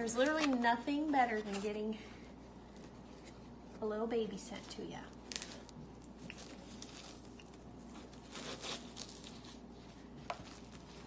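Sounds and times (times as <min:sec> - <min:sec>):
packaging rustling and crinkling: 0:05.1 - 0:11.0.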